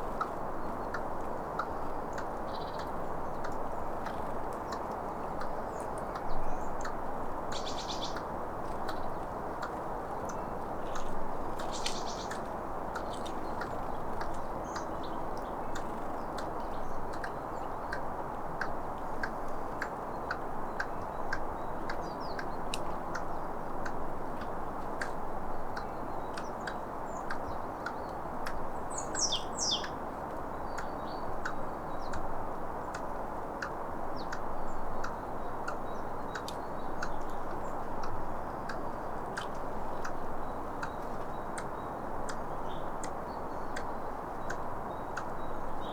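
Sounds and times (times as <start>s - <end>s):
squirrel clicking: 0.2s - 24.0s.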